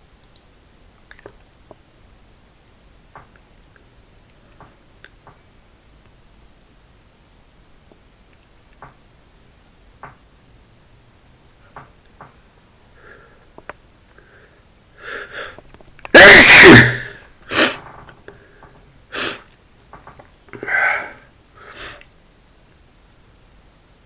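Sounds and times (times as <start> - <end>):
man sneezing: 16.1 - 17.9, 20.6 - 21.2
breathy sounds: 20.6 - 22.0.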